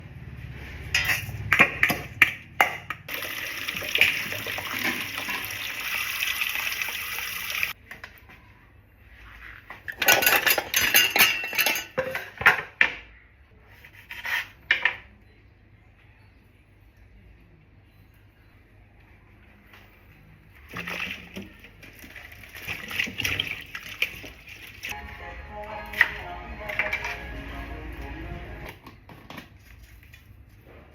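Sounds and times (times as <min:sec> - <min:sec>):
dishes and cutlery clinking: 0:09.9 - 0:12.9.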